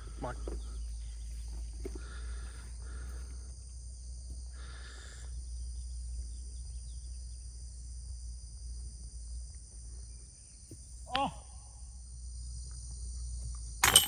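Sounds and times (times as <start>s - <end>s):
constant low rumble: 0.0s - 14.0s
insects buzzing: 0.0s - 14.0s.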